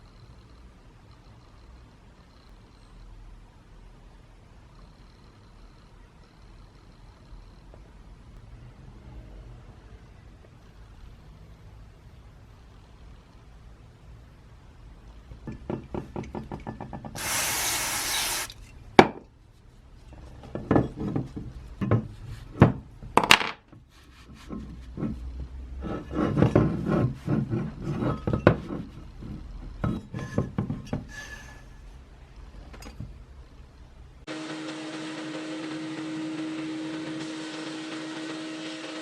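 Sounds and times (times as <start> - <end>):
burst of hiss: 17.2 - 18.6.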